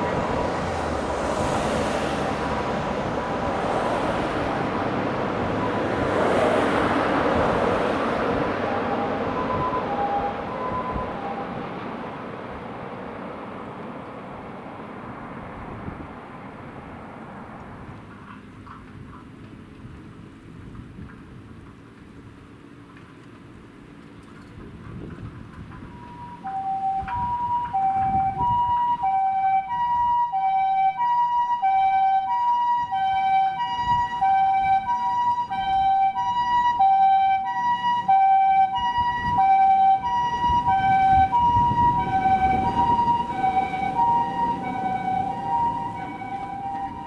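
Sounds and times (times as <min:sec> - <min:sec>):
vehicle rumble: 0:00.0 - 0:47.0
electronic two-tone siren: 0:05.5 - 0:06.1, 0:08.3 - 0:11.6, 0:25.8 - 0:47.0.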